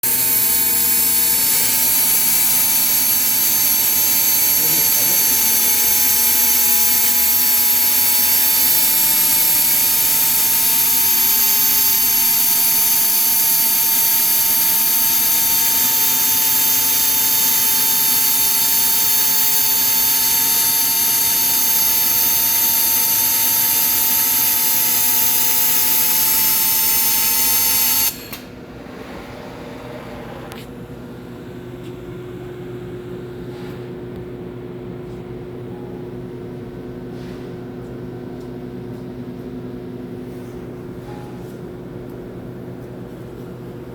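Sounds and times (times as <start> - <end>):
laser welding machine hissing: 0.0 - 28.5
steady machine hum: 0.0 - 43.9.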